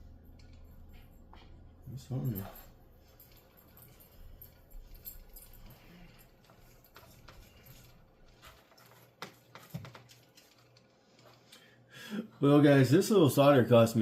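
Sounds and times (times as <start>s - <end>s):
low hum: 0.0s - 8.3s.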